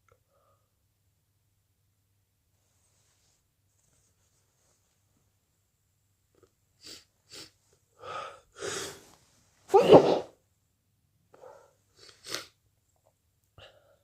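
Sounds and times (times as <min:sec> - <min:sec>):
person sneezing loudly: 0:09.7 - 0:10.4.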